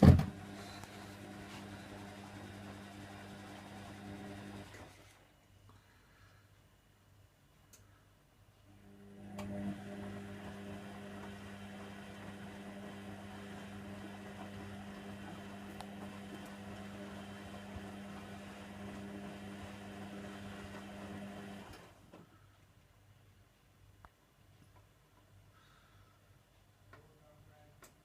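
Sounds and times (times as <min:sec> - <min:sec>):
washer dryer humming: 0:00.0 - 0:04.9, 0:08.8 - 0:22.0.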